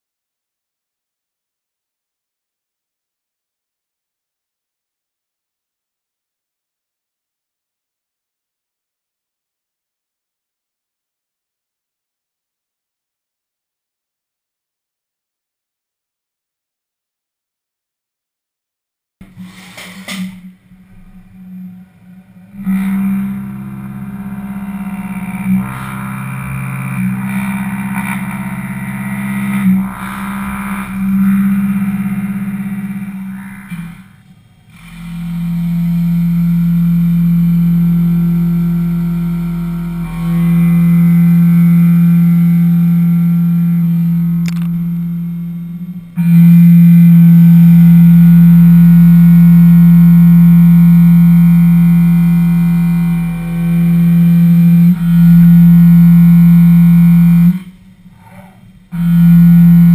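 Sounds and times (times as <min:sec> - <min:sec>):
milling machine cutting metal: 0:22.4 - 0:47.9.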